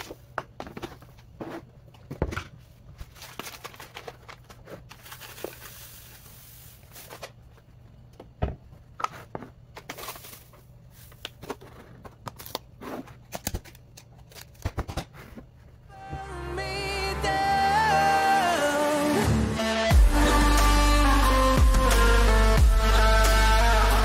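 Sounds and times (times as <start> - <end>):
plastic crinkling: 2.8 - 7.8.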